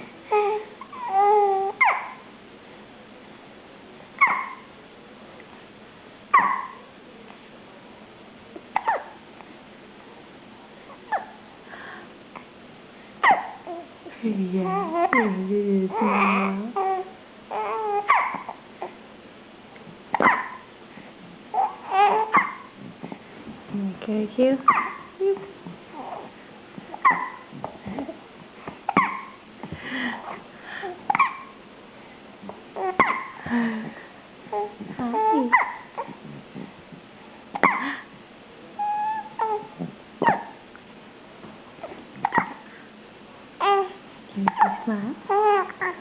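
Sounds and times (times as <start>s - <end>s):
baby hiccupping: 8.7s - 9.2s, 20.1s - 20.7s, 28.9s - 29.4s, 31.1s - 31.6s, 32.8s - 33.4s, 37.6s - 38.0s, 41.9s - 42.6s.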